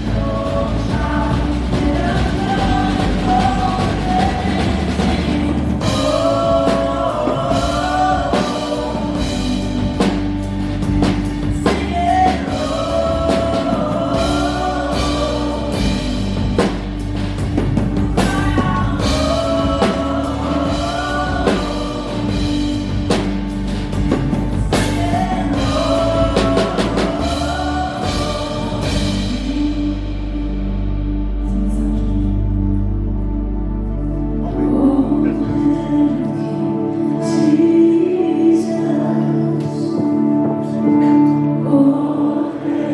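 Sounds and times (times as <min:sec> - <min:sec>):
sustained keyboard and bass: 0:00.0 - 0:42.9
drum kit hits: 0:00.5 - 0:29.7.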